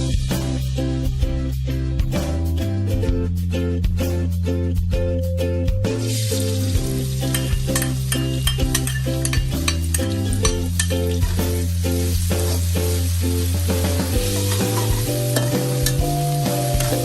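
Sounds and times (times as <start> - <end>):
background music with steady beat: 0.0 - 17.0
food sizzling in a pan: 5.9 - 17.0
utensil scraping a pan: 7.3 - 11.6, 14.1 - 17.0.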